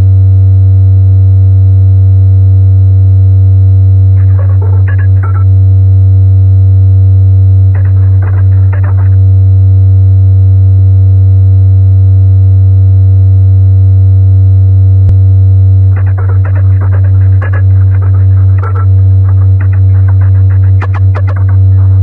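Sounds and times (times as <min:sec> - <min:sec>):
low synthesizer drone: 0:00.0 - 0:22.0
crackly noisy textures: 0:03.9 - 0:10.1, 0:15.1 - 0:22.0.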